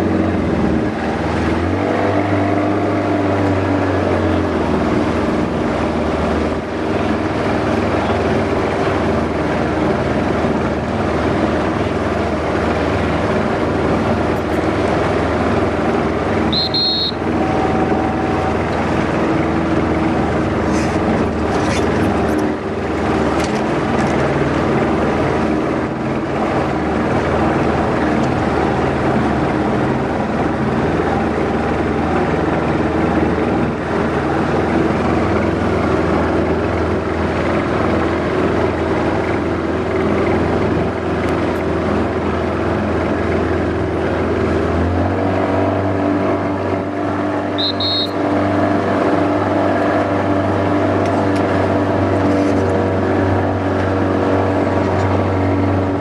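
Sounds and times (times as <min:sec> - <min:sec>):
motorboat engine running: 0:00.0 - 0:56.0.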